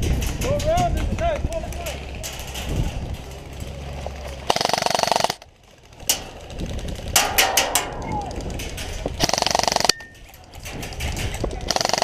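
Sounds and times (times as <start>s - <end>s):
airsoft gun full-auto bursts: 4.5s - 7.5s, 9.2s - 10.0s, 11.7s - 12.0s.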